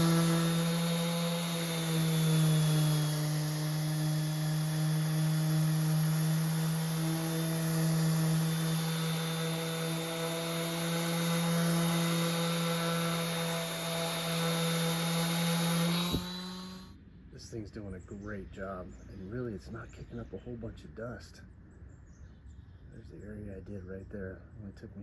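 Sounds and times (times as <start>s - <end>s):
sanding hiss on wood: 0.0s - 16.9s
orbit sander motor hum: 0.0s - 17.0s.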